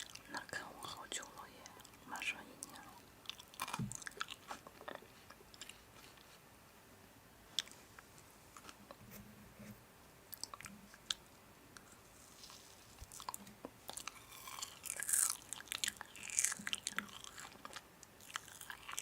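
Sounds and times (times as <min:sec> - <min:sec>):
crisp food being chewed: 0:00.0 - 0:02.0, 0:02.6 - 0:06.3, 0:10.3 - 0:11.2, 0:11.8 - 0:19.0.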